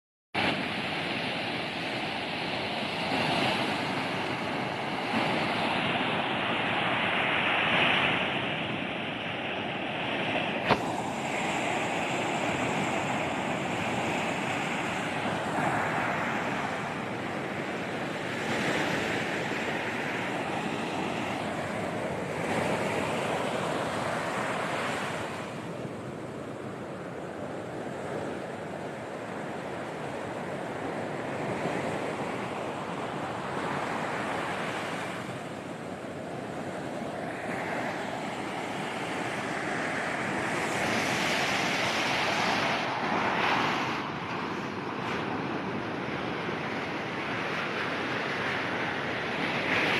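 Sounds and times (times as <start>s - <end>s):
sea waves breaking on a beach: 0.4s - 49.9s
wind on the microphone: 0.4s - 49.9s.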